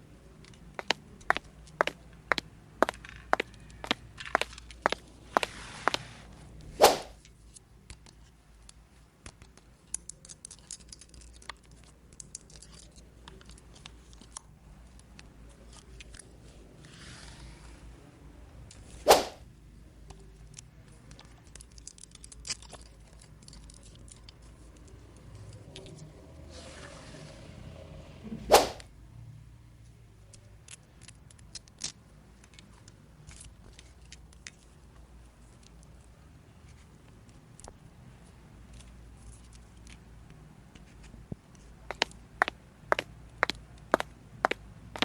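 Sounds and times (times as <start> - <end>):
sharp swishes: 6.7 - 7.2, 18.9 - 19.4, 28.4 - 28.9
plastic pieces clicking: 7.8 - 16.3, 20.4 - 24.9, 30.3 - 34.8.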